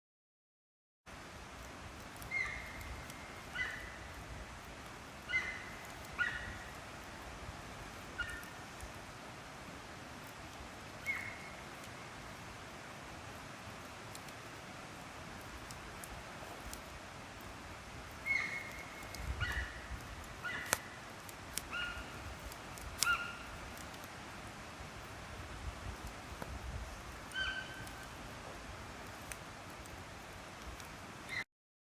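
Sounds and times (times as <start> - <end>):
campfire hissing and crackling: 1.1 - 31.4
high-pitched animal calls: 2.2 - 4.0, 5.2 - 6.7, 8.1 - 8.6, 18.2 - 22.3, 23.0 - 23.8, 27.3 - 28.2.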